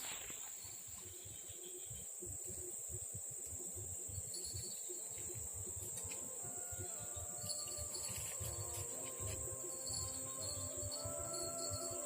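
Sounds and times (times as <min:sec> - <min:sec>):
insects droning: 0:00.0 - 0:12.0.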